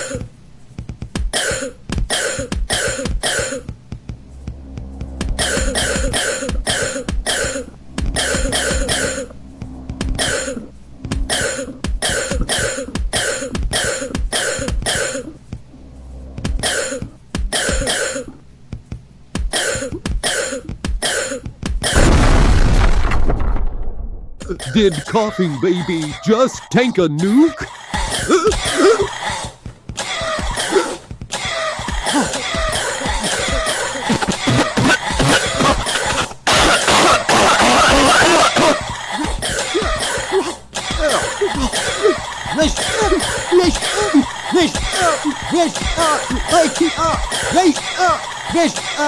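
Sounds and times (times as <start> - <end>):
baby coughing: 0.0 - 0.3, 1.3 - 3.7, 5.4 - 9.4, 10.2 - 10.7, 11.3 - 15.4, 16.6 - 18.4, 19.5 - 22.1, 24.4 - 49.0
loud blast: 22.0 - 24.4.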